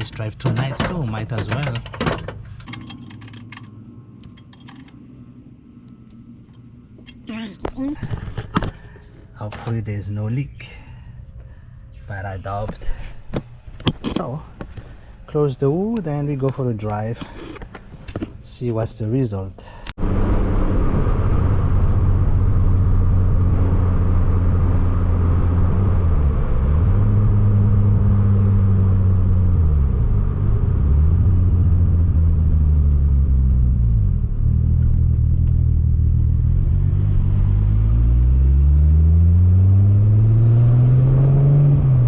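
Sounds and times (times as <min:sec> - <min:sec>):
turbo engine accelerating through gears: 0:20.0 - 0:42.0.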